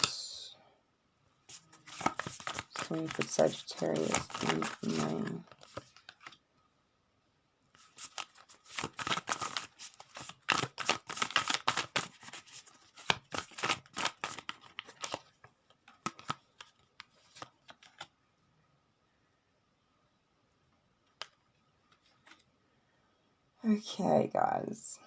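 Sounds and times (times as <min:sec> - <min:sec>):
cards shuffling and flicking: 0:01.5 - 0:06.4, 0:07.8 - 0:18.1.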